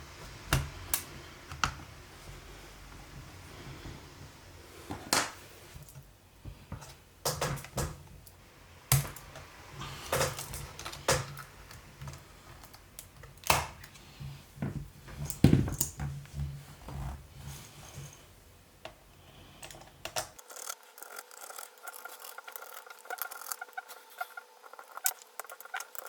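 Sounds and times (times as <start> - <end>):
tools clicking and tapping on laptop: 6.7 - 8.0.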